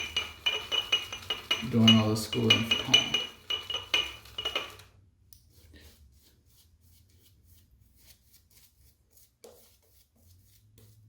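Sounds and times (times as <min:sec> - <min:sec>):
brush clinking against soap bowl: 0:00.0 - 0:04.9.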